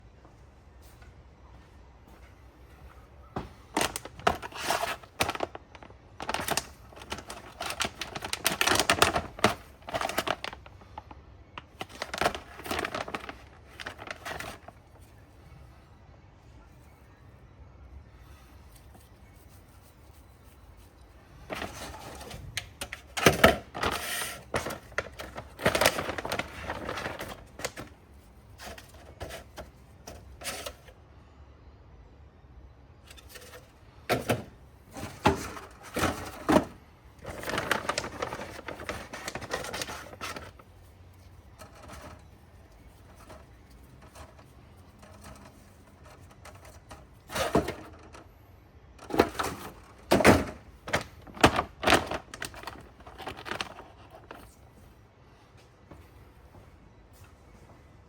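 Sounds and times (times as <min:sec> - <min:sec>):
packaging rustling: 0:03.7 - 0:15.0, 0:21.4 - 0:30.9, 0:33.1 - 0:48.2, 0:49.0 - 0:54.7.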